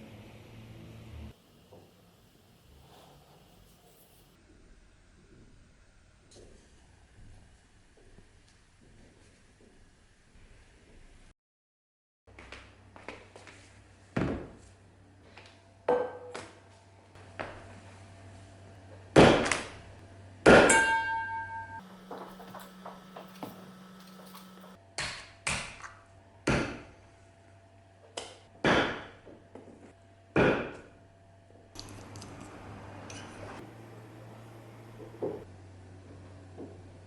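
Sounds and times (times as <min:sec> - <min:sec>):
axe strikes: 0:20.5 - 0:21.4, 0:28.6 - 0:29.2, 0:30.4 - 0:30.9
ringing metallic tone: 0:20.7 - 0:24.8.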